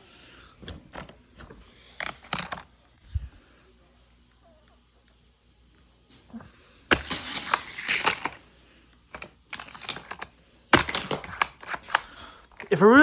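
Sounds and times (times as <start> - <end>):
plastic pieces rattling and clicking: 0.9 - 2.7, 6.9 - 8.4, 9.1 - 12.8.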